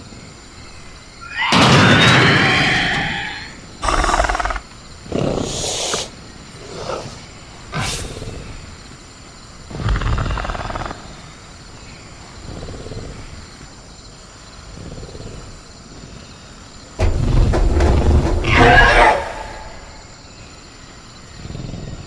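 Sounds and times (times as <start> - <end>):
loud snarling: 1.3 - 8.7, 17.0 - 20.0.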